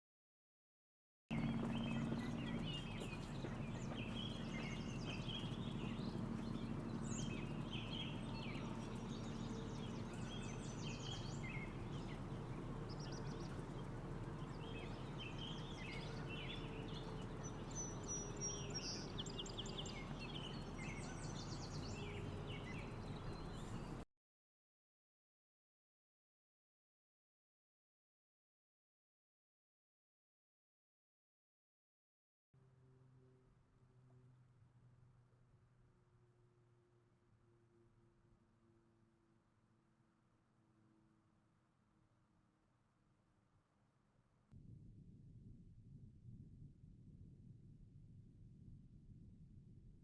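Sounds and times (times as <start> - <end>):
birds chirping: 1.3 - 24.0.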